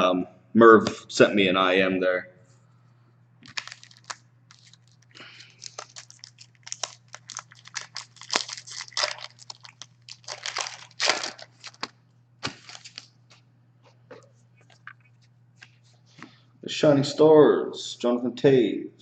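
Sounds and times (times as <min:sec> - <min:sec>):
foil wrapper crinkling and tearing: 0:03.4 - 0:13.1.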